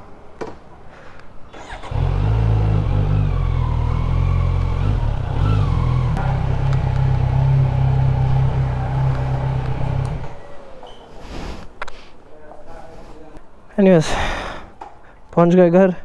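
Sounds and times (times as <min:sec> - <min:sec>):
motorcycle engine running: 0:01.8 - 0:10.4.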